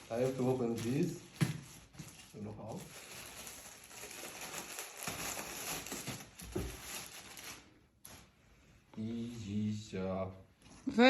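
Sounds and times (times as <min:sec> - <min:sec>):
packaging crinkling and rustling: 0:00.0 - 0:08.3.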